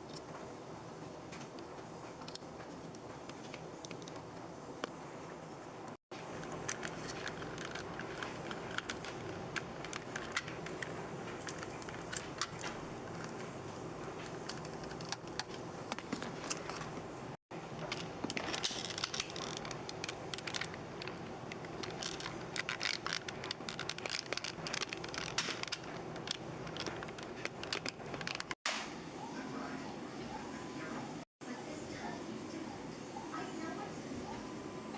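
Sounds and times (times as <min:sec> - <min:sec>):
handling clicks and scrapes: 0:06.1 - 0:28.6.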